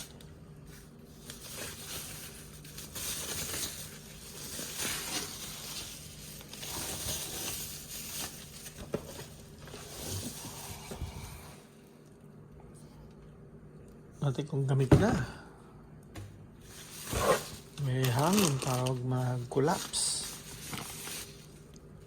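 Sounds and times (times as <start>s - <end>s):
packing material rustling: 0.0s - 11.4s, 16.6s - 21.9s.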